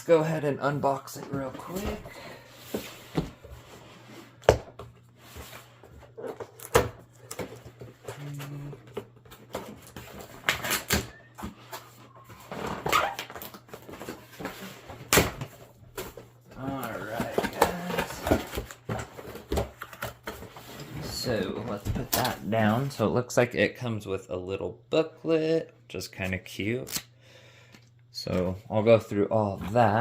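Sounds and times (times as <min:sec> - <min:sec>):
cardboard and plastic rustling: 0:00.8 - 0:22.7.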